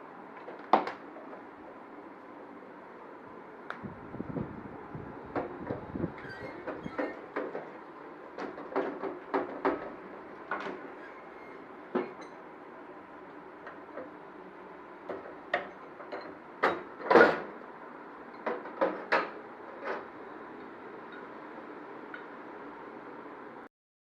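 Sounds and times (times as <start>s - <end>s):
steady hum: 0.0s - 23.7s
knocks and clatters: 8.4s - 10.8s.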